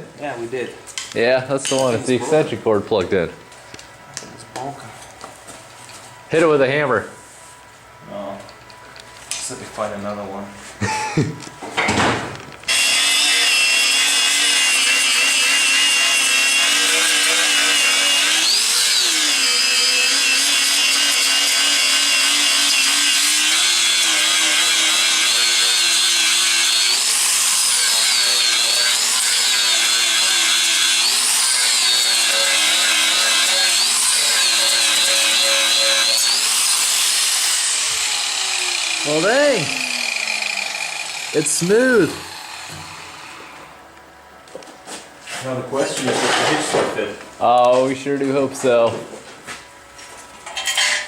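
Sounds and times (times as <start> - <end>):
electric grinder grinding steel: 12.7 - 43.8.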